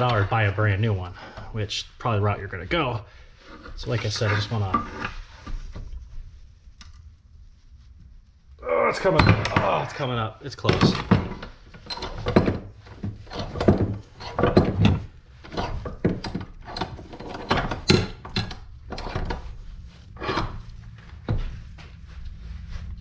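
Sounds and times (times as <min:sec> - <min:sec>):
metal clicks knocks and scrapes: 0:10.7 - 0:21.5.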